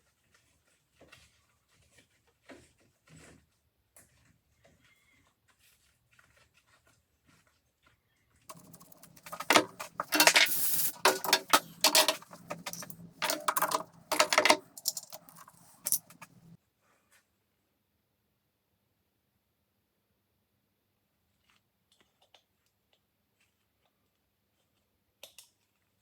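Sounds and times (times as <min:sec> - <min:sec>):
metallic rattling and scraping: 0:08.5 - 0:16.6
workshop machine humming: 0:08.5 - 0:16.6.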